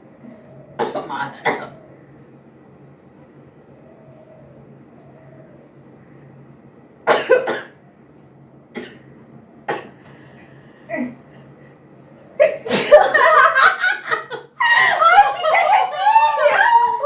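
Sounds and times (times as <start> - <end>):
person coughing: 7.1 - 7.8.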